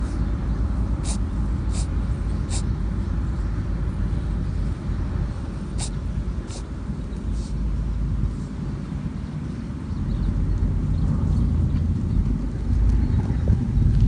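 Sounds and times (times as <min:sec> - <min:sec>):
steady low rumble: 0:00.0 - 0:14.0
rabbit sneezing: 0:01.0 - 0:02.8, 0:05.7 - 0:07.6.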